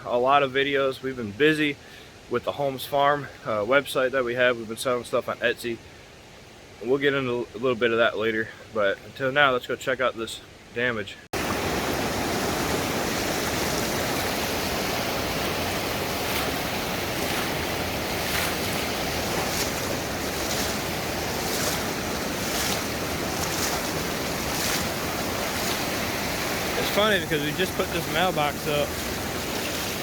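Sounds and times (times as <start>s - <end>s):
rushing flood water roar: 11.4s - 30.0s
water hissing: 11.4s - 30.0s.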